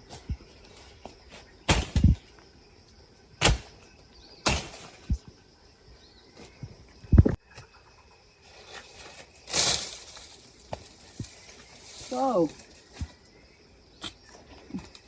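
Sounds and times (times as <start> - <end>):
heavy thuds: 1.1 - 2.3.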